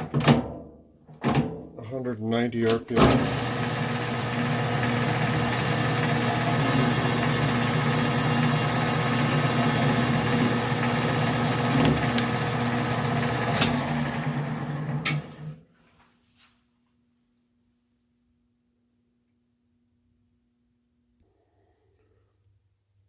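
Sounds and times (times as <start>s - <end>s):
lathe motor and gear hum: 3.0s - 15.5s
sharp clicks from lathe work: 3.1s - 14.1s, 14.9s - 15.4s.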